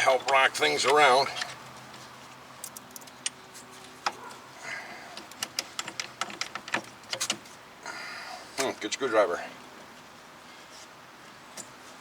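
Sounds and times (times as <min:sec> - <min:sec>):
metallic clicks and knocks: 0:05.2 - 0:07.4.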